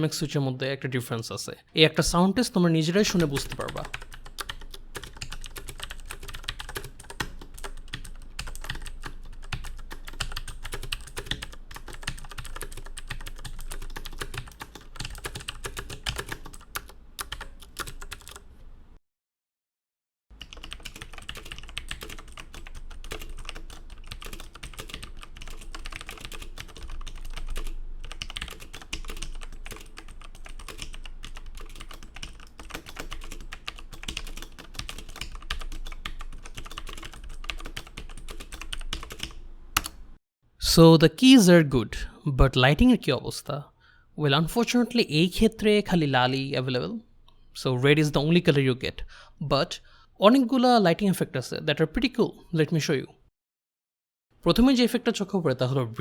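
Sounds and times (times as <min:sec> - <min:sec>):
mechanical keyboard typing: 0:03.0 - 0:18.4, 0:20.4 - 0:40.0.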